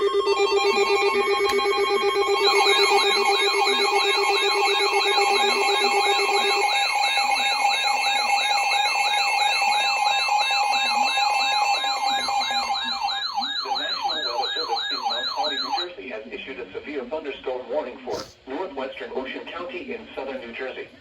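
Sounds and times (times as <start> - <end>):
warbling siren-like alert tone: 0.0 - 15.8
steady beeping tones: 0.0 - 15.9.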